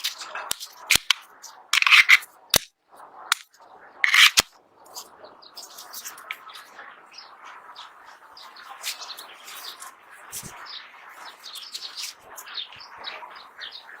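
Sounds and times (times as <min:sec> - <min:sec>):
small birds chirping: 0:03.2 - 0:14.0.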